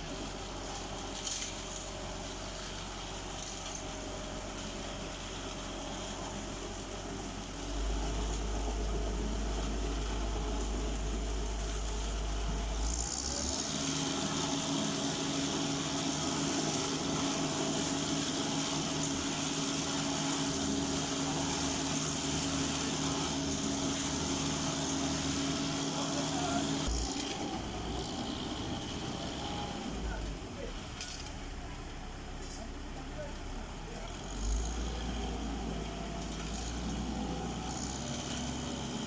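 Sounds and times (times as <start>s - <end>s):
mixer truck engine running: 0.0s - 39.0s.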